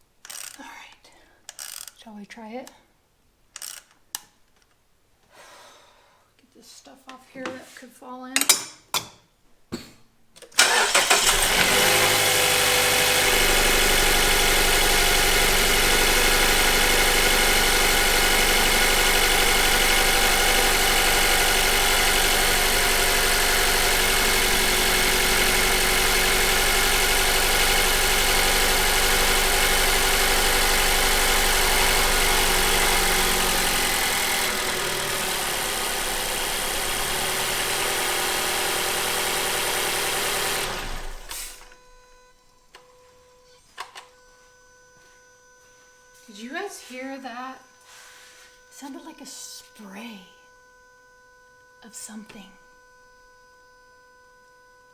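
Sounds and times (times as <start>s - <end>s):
car engine starting and idling: 10.5s - 41.8s.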